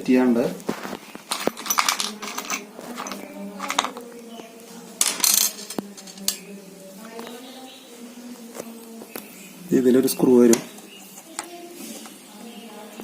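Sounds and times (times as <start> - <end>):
scraping rustles: 0.6 - 4.1
screws and screwdriver clinking: 1.2 - 4.1, 5.0 - 6.4.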